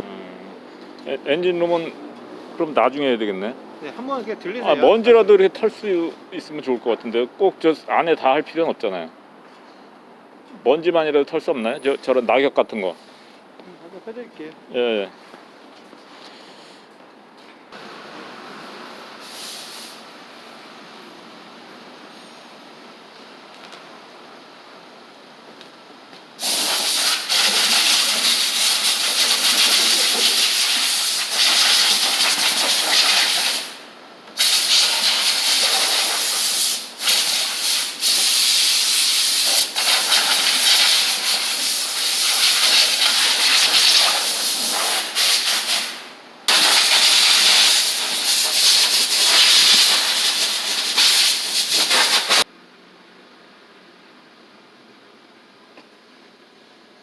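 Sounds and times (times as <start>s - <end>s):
compressed air blow gun hissing: 19.2s - 20.0s, 26.4s - 52.5s.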